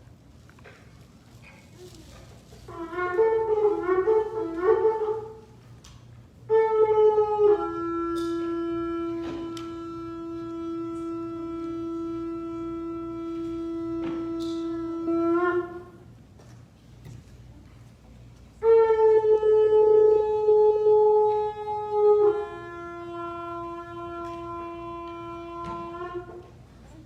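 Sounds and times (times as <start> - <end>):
shofar blowing: 2.6 - 5.6, 6.4 - 16.2, 18.6 - 26.6.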